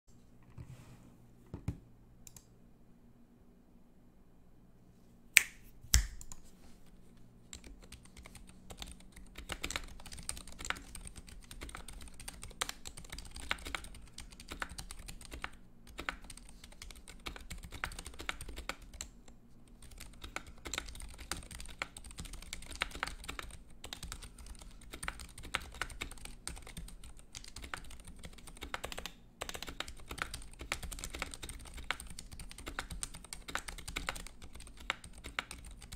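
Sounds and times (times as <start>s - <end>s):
mechanical keyboard typing: 7.5s - 19.2s, 19.8s - 35.9s.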